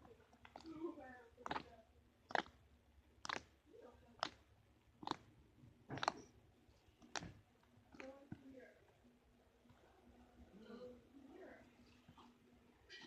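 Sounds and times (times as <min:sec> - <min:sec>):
slime squelching pops: 0:01.4 - 0:01.7, 0:02.3 - 0:02.6, 0:03.2 - 0:03.6, 0:04.2 - 0:05.3, 0:05.9 - 0:06.3.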